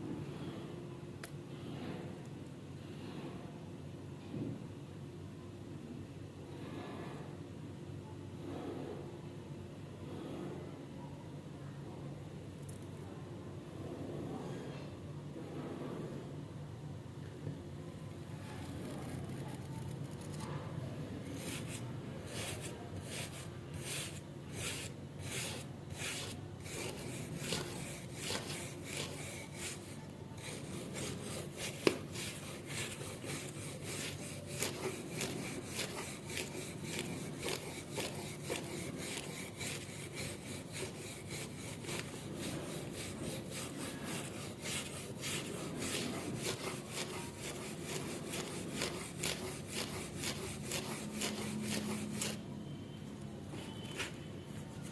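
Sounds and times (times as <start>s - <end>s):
tool scraping rusted steel: 21.4s - 52.4s.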